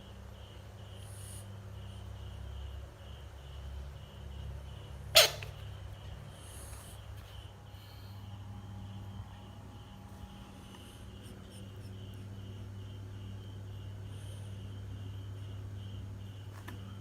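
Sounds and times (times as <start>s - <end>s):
frog harsh call: 5.0s - 5.7s.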